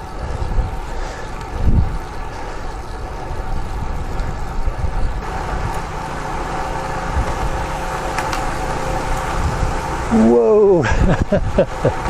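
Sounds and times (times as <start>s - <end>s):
wind on microphone: 0.0s - 5.8s, 9.3s - 10.2s
bicycle tyre and road noise: 0.0s - 12.0s.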